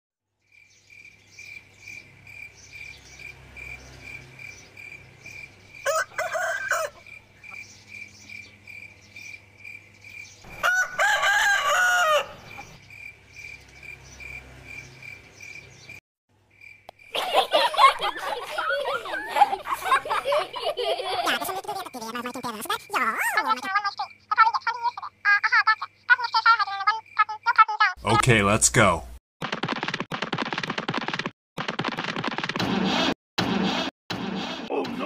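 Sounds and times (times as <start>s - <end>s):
crickets chirping: 0.5s - 27.9s
rooster crowing: 5.8s - 7.2s, 10.5s - 12.8s.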